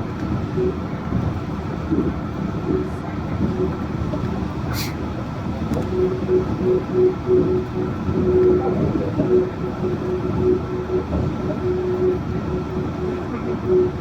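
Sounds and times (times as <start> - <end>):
train running: 0.0 - 14.0
humming tone: 5.7 - 14.0.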